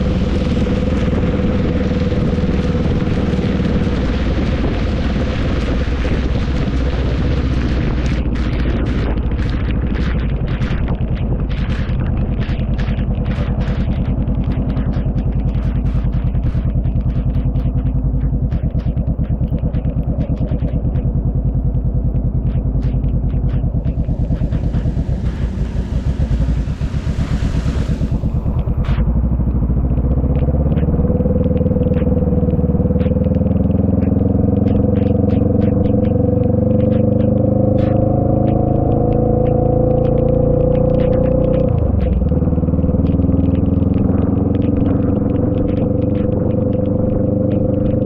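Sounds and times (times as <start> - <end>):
raindrops ticking: 0.0 - 48.0
vehicle engine running: 0.0 - 48.0
wind rumbling on microphone: 0.0 - 48.0
traffic noise: 21.4 - 47.8
rain hiss: 23.6 - 29.4.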